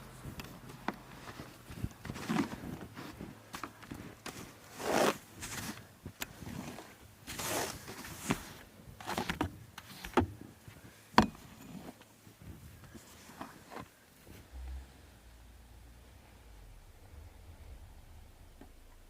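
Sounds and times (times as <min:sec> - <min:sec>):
footsteps in snow: 0:01.1 - 0:08.7.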